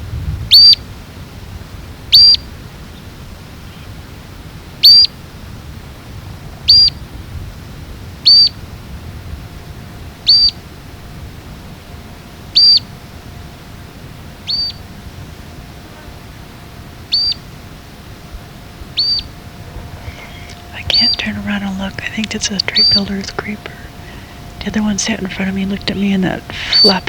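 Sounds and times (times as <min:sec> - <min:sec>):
low background rush: 0:00.0 - 0:27.0
bird sharp call notes: 0:10.3 - 0:10.6, 0:12.6 - 0:12.9, 0:14.4 - 0:14.8, 0:17.1 - 0:17.5, 0:18.8 - 0:27.0.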